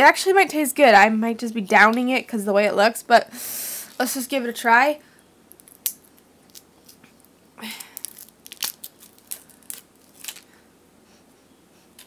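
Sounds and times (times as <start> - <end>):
plastic snack wrapper clicking: 5.5 - 6.7, 7.9 - 10.5
wrapper rustle: 5.5 - 10.6.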